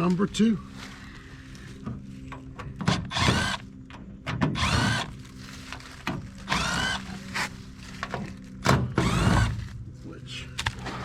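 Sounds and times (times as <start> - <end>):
cordless drill whining: 3.1 - 3.6, 4.6 - 5.1, 6.4 - 7.2, 9.0 - 9.5.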